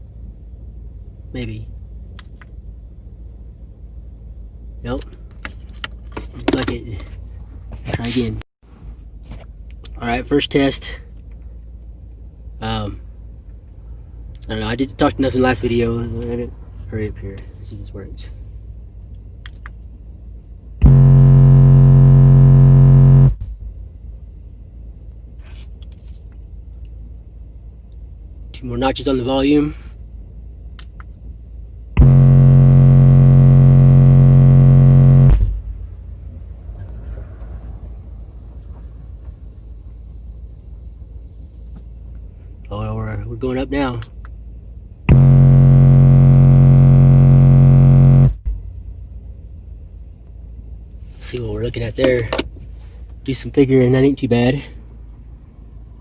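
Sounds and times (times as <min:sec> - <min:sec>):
subwoofer test tone burp: 0:20.8 - 0:23.4, 0:32.0 - 0:35.5, 0:45.1 - 0:48.4.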